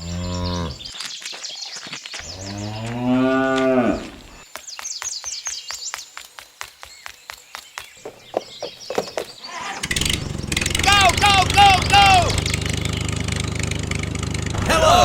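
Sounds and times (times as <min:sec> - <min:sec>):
long low animal call: 0:00.0 - 0:00.8.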